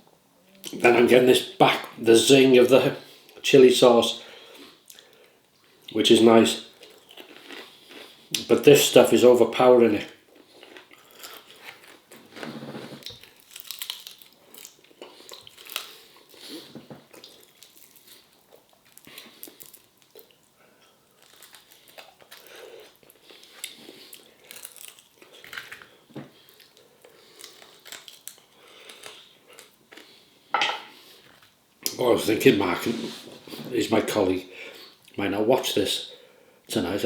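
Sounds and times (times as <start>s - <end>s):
person chewing and crunching food: 6.7s - 8.5s, 10.2s - 31.5s.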